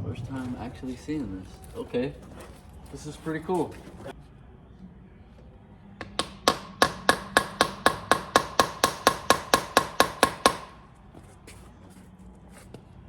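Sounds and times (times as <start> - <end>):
hammer striking metal: 6.0 - 10.8.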